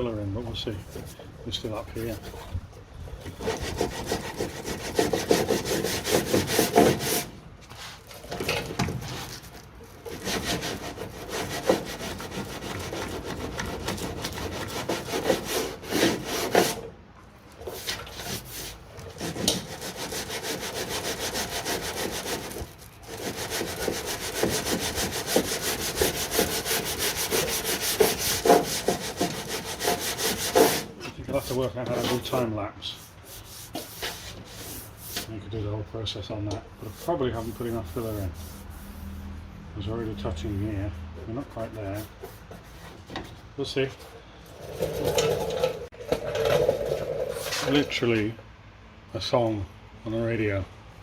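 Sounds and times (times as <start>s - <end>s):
sanding block rasping on filler: 3.3s - 8.0s, 10.1s - 16.8s, 17.6s - 35.3s, 36.8s - 39.1s.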